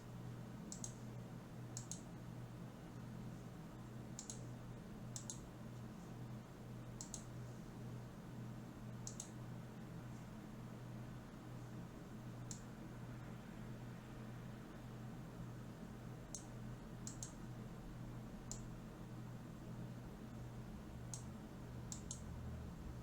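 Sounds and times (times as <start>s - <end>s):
low electrical hum: 0.0s - 23.0s
computer mouse clicks: 0.7s - 1.0s, 1.8s - 2.1s, 4.2s - 4.5s, 5.2s - 5.5s, 7.0s - 7.3s, 9.0s - 9.4s, 12.4s - 12.7s, 16.3s - 17.4s, 18.4s - 18.7s, 21.9s - 22.3s.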